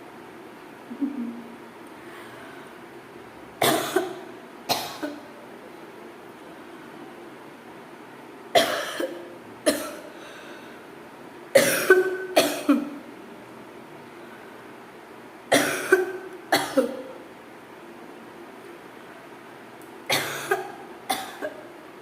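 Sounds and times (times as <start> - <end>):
person coughing: 3.6 - 5.3, 8.6 - 10.0, 11.6 - 13.0, 15.5 - 17.1, 20.1 - 21.6.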